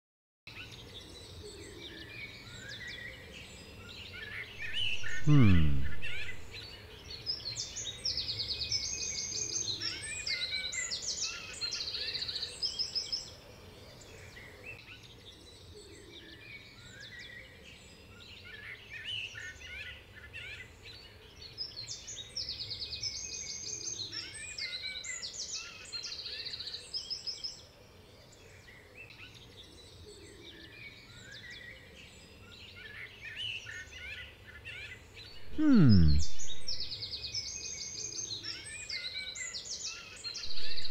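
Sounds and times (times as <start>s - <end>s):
songbirds chirping and trilling: 6.0s - 35.6s, 36.2s - 40.9s
faint low hum: 35.4s - 36.9s, 40.5s - 40.9s.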